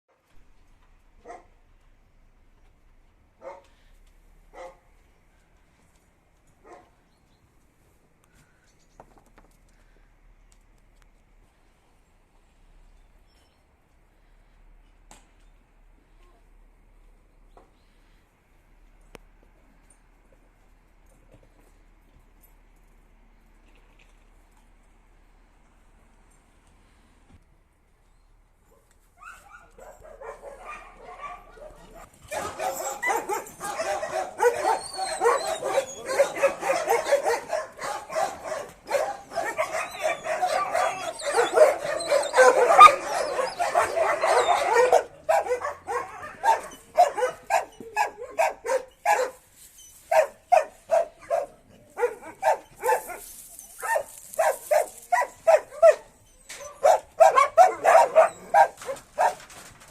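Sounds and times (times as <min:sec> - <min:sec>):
dogs barking: 0:04.5 - 0:04.9, 0:29.3 - 0:49.4, 0:50.1 - 0:59.5.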